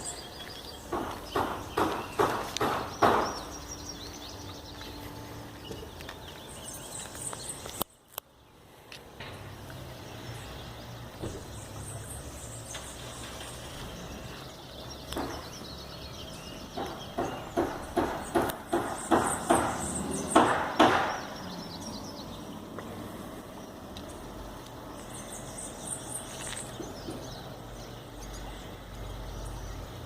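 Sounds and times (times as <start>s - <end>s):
small birds chirping: 0.0s - 30.0s
sharp knocks: 0.9s - 3.5s, 15.1s - 15.5s, 16.7s - 21.4s.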